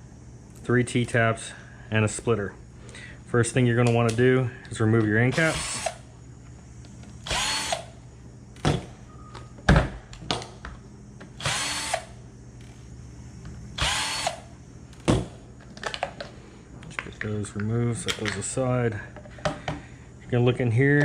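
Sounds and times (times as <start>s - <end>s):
cordless drill spurts: 5.3s - 6.0s, 7.2s - 7.8s, 11.4s - 12.0s, 13.8s - 14.4s.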